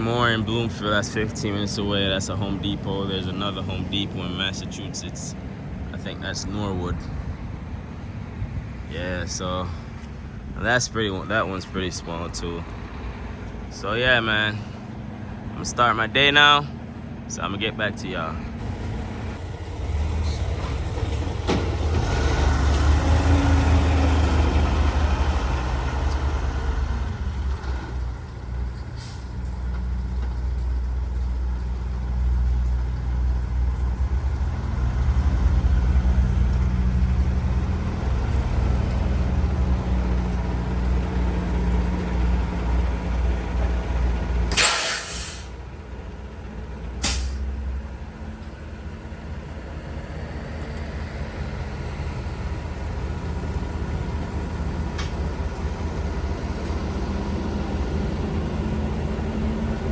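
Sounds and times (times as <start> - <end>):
truck diesel engine running: 9.2 - 59.9
air brakes hissing: 28.7 - 29.5, 44.5 - 45.6, 47.0 - 47.5.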